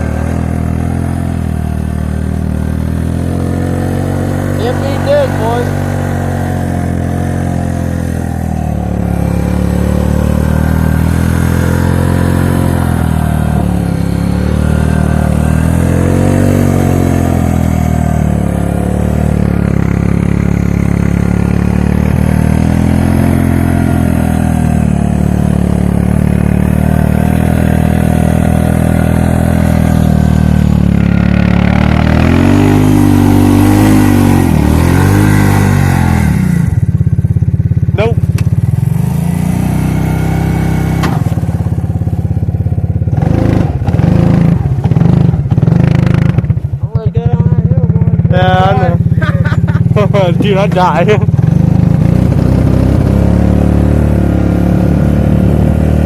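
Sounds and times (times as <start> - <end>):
quad bike engine revving: 0.0 - 56.0.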